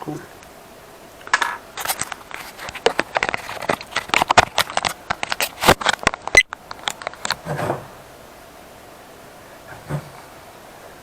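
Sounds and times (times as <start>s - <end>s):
plastic parts clicking and knocking: 1.2s - 7.8s.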